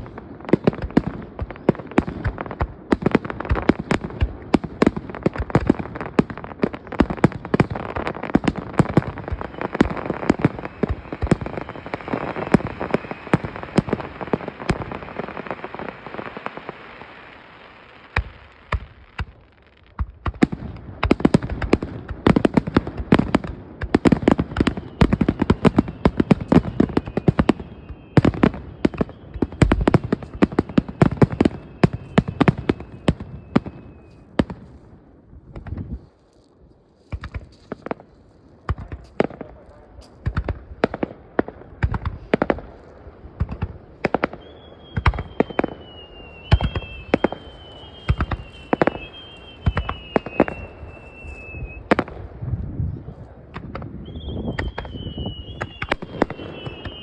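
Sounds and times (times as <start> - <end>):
fireworks crackling and popping: 0.0 - 57.0
falling high whistle: 9.4 - 13.8, 24.5 - 34.2, 44.3 - 51.9, 54.0 - 57.0.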